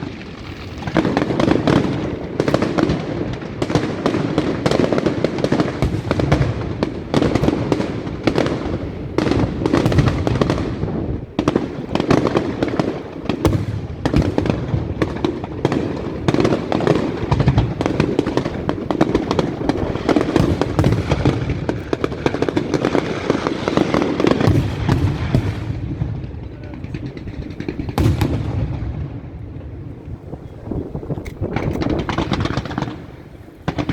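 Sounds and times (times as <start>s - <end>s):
fireworks booming and crackling: 0.0s - 33.9s.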